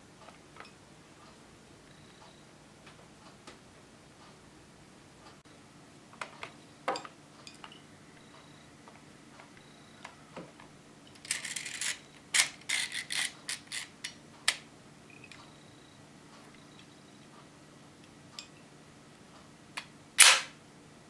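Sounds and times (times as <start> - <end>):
plastic clicks and clacks: 11.2 - 14.6.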